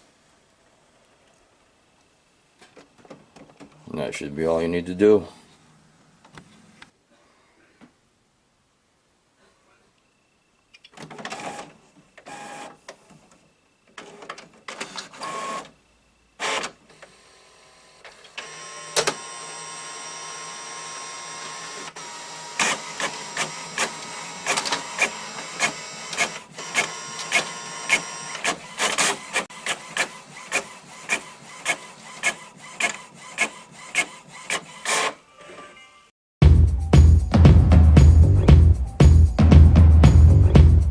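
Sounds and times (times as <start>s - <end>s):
printer motor whirring: 16.4s - 35.2s.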